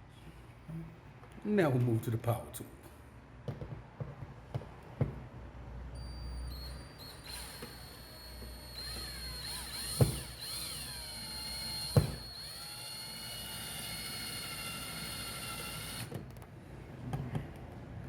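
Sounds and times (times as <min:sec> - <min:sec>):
cordless drill whining: 0:06.0 - 0:16.2.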